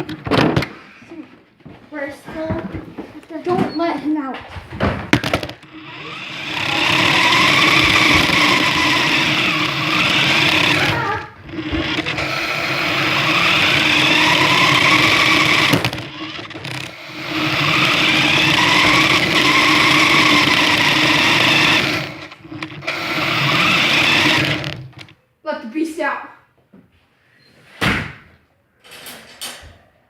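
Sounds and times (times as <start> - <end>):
toy car electric motor whining: 5.2 - 25.2.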